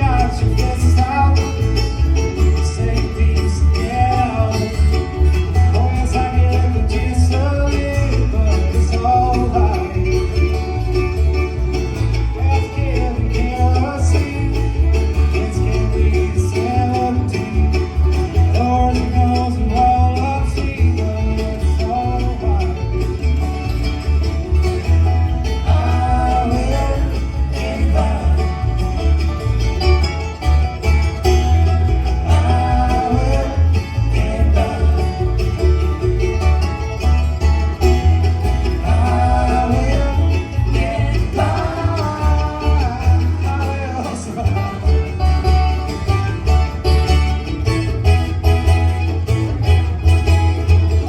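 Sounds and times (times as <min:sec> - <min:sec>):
banjo: 0:00.0 - 0:51.0
fiddle: 0:00.0 - 0:51.0
guitar: 0:00.0 - 0:51.0
pulsing bass: 0:00.0 - 0:51.0.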